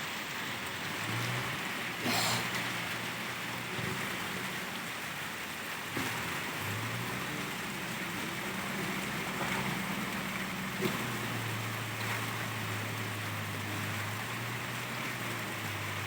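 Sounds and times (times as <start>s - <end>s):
low engine hum: 0.0s - 16.0s
rain-like hiss: 0.0s - 16.0s.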